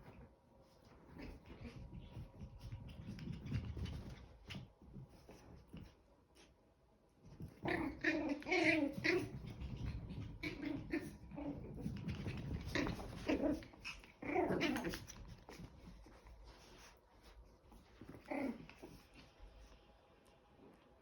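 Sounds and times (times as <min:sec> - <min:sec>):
puppies growling: 0:07.4 - 0:16.1, 0:18.0 - 0:19.2.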